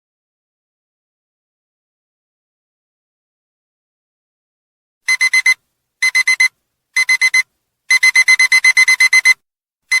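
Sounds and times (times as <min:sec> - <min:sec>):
alarm clock beeping: 0:05.1 - 0:10.0.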